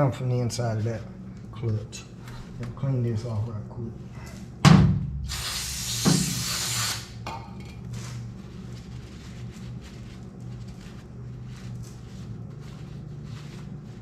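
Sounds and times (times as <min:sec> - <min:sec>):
aerosol spray hissing: 0:05.3 - 0:07.1.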